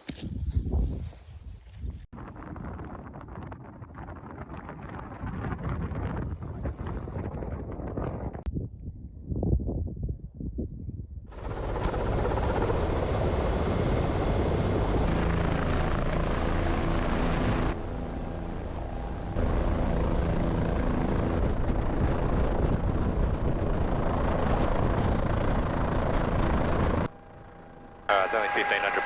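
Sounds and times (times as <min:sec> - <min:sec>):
helicopter rotor and turbine: 0:11.3 - 0:29.0.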